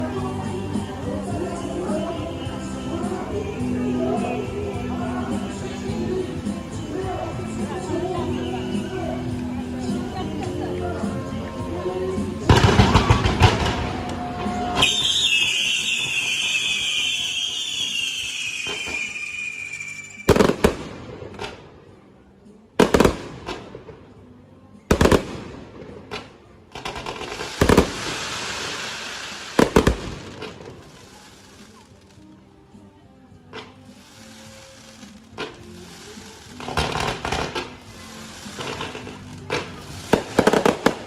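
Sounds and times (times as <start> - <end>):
faint music: 0.0 - 41.0
fireworks crackling: 0.0 - 41.0
fireworks bangs: 12.4 - 21.6, 24.9 - 31.8, 34.2 - 41.0
firework whistle falling in pitch: 14.6 - 20.3.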